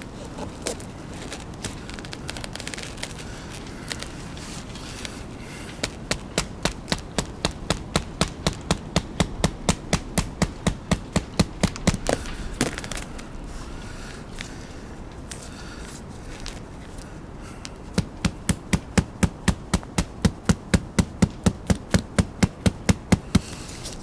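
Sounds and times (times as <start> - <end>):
light rustling: 0.0 - 24.0
rapid sharp knocks: 5.7 - 12.8, 17.9 - 23.6.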